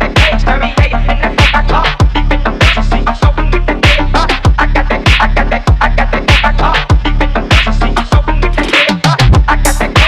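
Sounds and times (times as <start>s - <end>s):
electronic music with heavy beat: 0.0s - 10.0s.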